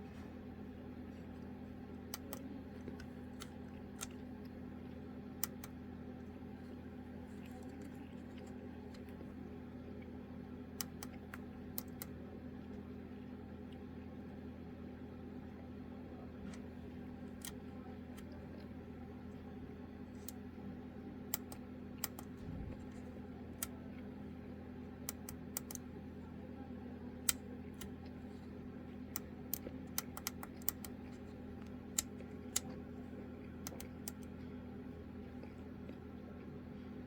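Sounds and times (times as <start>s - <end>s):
steady low hum: 0.0s - 37.0s
sharp clicks: 25.1s - 25.8s.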